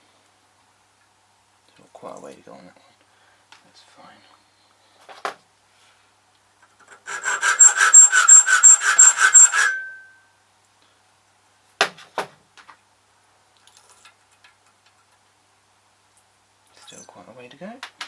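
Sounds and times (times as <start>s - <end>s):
file rasping on metal key: 6.9s - 10.1s.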